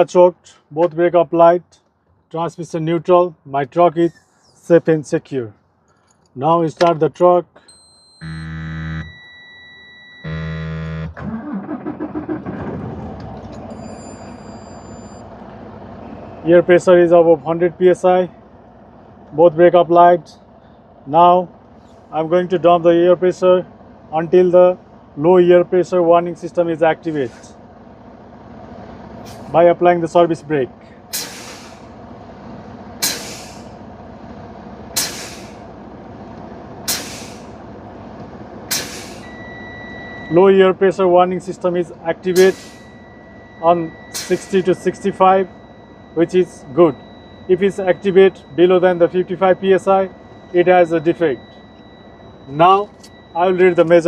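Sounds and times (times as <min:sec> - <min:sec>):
diesel engine cranking and idling: 0:00.0 - 0:54.0
air brakes hissing: 0:04.1 - 0:04.7, 0:21.8 - 0:22.2, 0:27.0 - 0:27.8, 0:29.2 - 0:29.6, 0:30.8 - 0:32.1, 0:33.0 - 0:33.9, 0:34.9 - 0:35.8, 0:36.8 - 0:37.7, 0:38.6 - 0:40.3, 0:42.4 - 0:47.5
warning buzzer: 0:07.7 - 0:11.2, 0:42.3 - 0:54.0.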